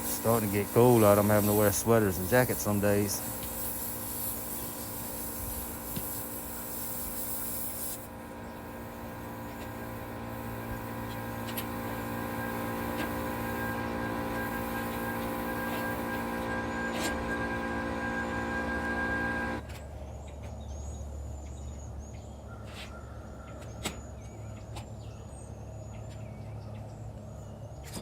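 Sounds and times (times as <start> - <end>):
high hiss: 0.0 - 8.1, 8.7 - 19.6
machine hum: 0.0 - 19.7.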